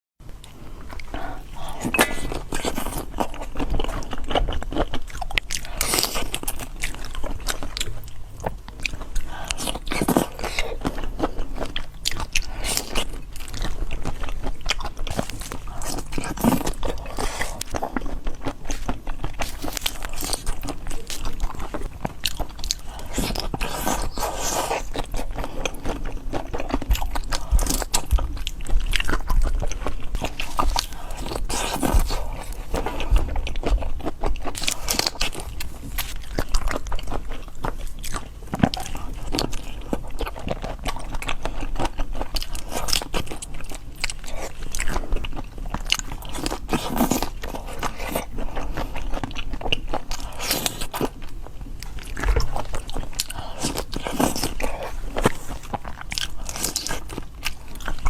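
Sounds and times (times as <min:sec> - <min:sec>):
person chewing crunchy food: 0:00.3 - 0:58.0.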